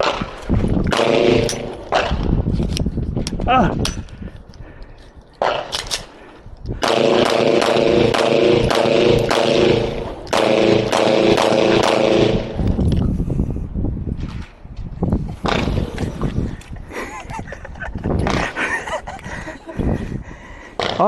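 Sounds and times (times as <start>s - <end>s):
sharp cracks: 0.0s - 2.4s, 5.4s - 12.7s, 15.4s - 16.1s.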